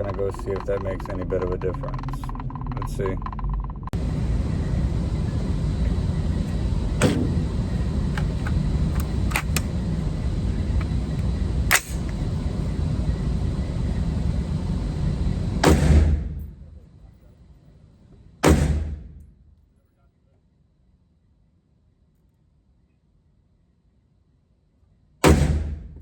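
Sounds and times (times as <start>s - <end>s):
steady rushing noise: 0.0s - 16.3s
rifle shots: 6.9s - 9.8s, 11.6s - 12.2s, 15.6s - 16.4s, 18.4s - 19.2s.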